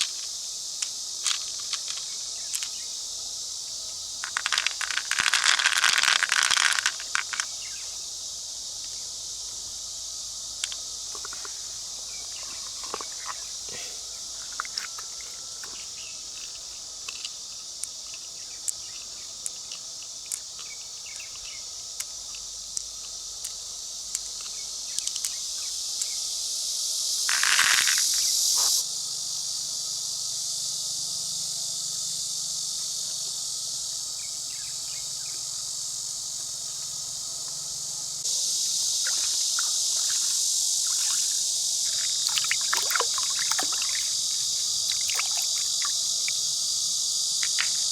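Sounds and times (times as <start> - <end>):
small clicks: 0.0 - 2.8, 19.4 - 25.4
insects trilling: 0.0 - 47.9.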